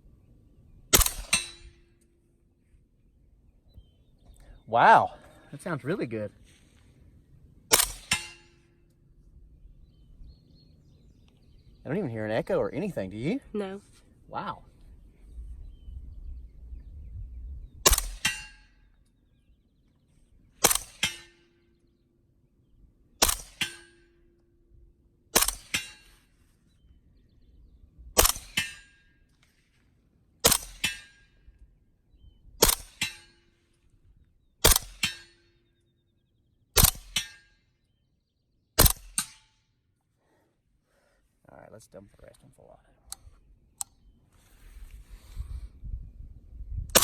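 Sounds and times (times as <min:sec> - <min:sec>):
suppressed gunshots: 0:00.9 - 0:02.0, 0:07.7 - 0:08.9, 0:17.8 - 0:18.8, 0:20.6 - 0:21.7, 0:23.2 - 0:24.2, 0:25.3 - 0:26.2, 0:28.2 - 0:29.0, 0:30.4 - 0:31.4, 0:32.6 - 0:33.4, 0:34.6 - 0:35.4, 0:36.8 - 0:37.4, 0:38.8 - 0:39.6.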